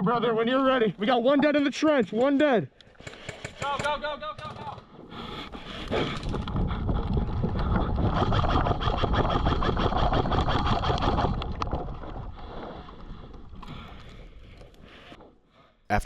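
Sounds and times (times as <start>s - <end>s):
wind buffeting microphone: 6.0s - 12.1s.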